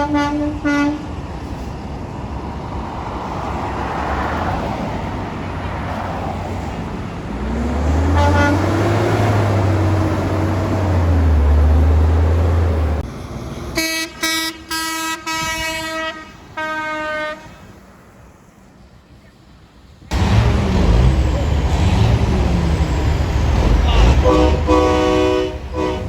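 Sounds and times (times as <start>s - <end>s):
truck horn blasts: 0.0s - 1.1s, 8.0s - 10.4s, 13.8s - 17.7s, 23.9s - 26.0s
heavy truck engine rumble: 0.0s - 16.6s, 17.3s - 26.0s.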